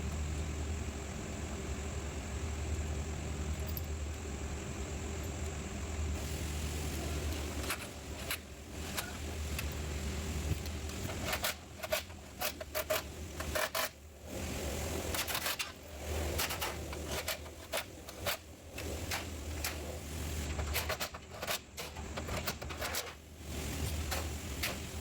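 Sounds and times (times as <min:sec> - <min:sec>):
steady low hum: 0:00.0 - 0:25.0
hand tools clicking and rattling: 0:10.6 - 0:14.0, 0:15.1 - 0:19.8.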